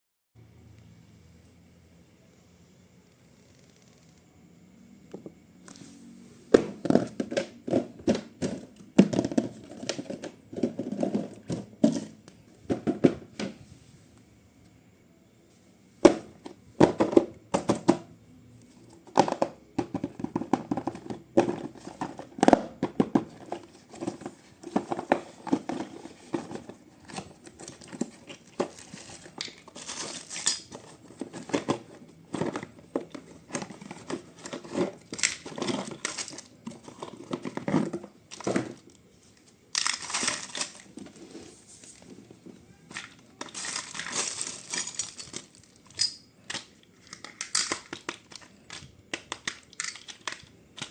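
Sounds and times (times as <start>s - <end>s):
packaging crinkling and rustling: 23.2s - 50.9s.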